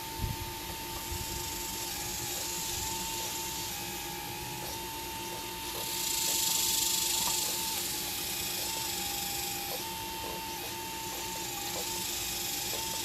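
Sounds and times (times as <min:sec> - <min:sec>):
hydraulic pump motor whining: 0:00.0 - 0:13.0
hiss: 0:05.7 - 0:13.0.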